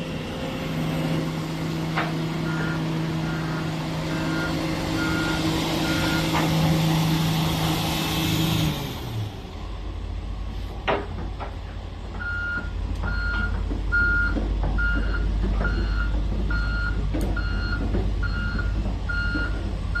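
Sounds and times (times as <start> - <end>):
diesel engine rumble: 0.0 - 20.0
excavator warning alarm beeping: 2.4 - 6.5, 12.2 - 20.0.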